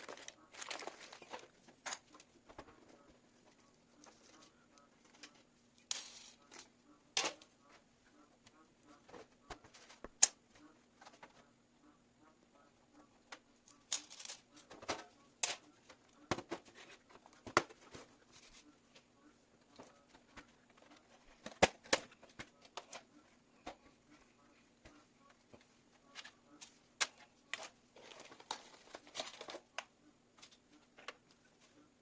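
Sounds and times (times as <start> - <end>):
hands handling pc parts: 0.0 - 2.9, 25.5 - 31.3
steady low hum: 0.0 - 32.0.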